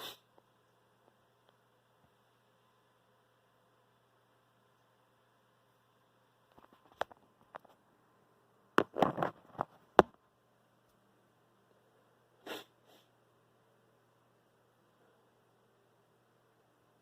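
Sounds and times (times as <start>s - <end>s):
man sniffing hard: 0.0s - 0.3s, 12.4s - 13.1s.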